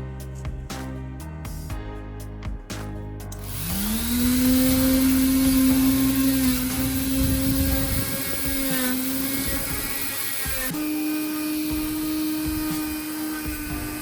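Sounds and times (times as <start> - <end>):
small electric motor whining: 3.4 - 14.0.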